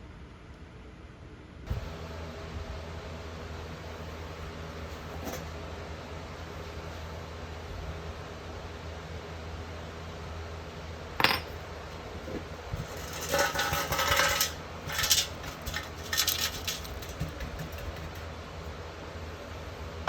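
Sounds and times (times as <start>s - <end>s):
steady low hum: 0.0s - 20.0s
small metal pieces clinking: 12.8s - 17.2s.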